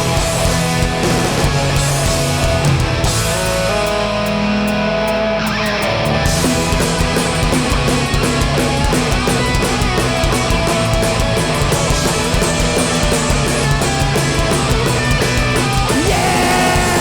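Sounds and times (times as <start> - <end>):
bass guitar: 0.0 - 17.0
distorted electric guitars: 0.0 - 17.0
pounding drums: 5.7 - 17.0.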